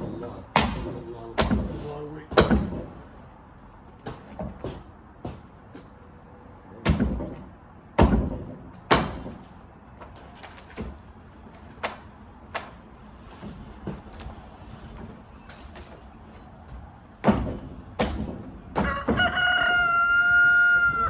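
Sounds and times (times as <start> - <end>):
wooden debris thudding: 17.2 - 19.4.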